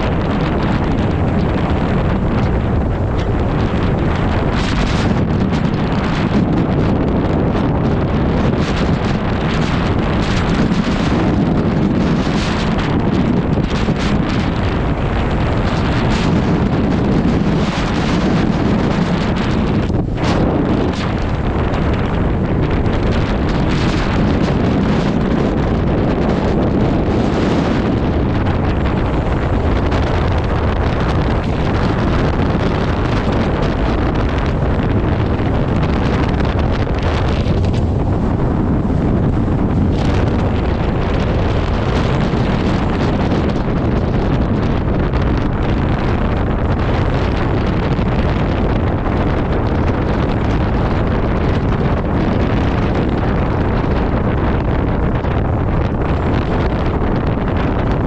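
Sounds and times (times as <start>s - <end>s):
strong wind on microphone: 0.0s - 58.0s.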